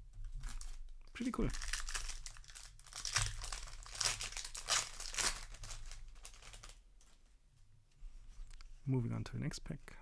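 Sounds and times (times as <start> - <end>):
plastic foil wrapper crinkling: 0.4 - 7.2.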